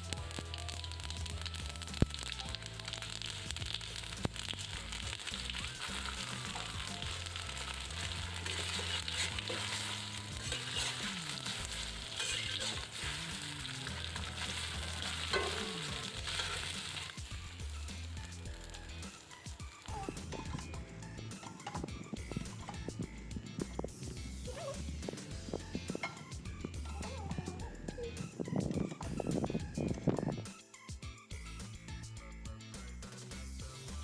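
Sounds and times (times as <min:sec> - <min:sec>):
food sizzling in hot oil: 0:00.0 - 0:26.8
background music: 0:00.0 - 0:34.0.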